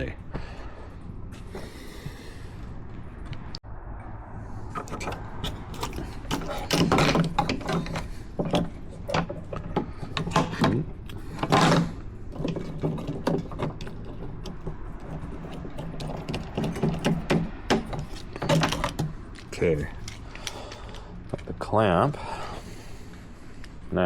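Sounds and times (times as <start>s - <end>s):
metal scraping: 0.0s - 23.6s
metal hardware clicking and rattling: 4.8s - 22.2s.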